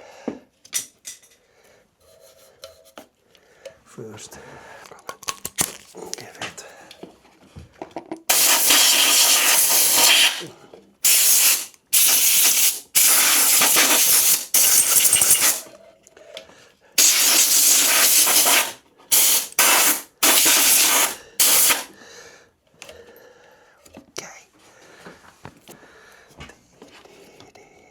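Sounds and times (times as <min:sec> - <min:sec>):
aerosol spray hissing bursts: 0:08.3 - 0:15.7, 0:17.0 - 0:21.9.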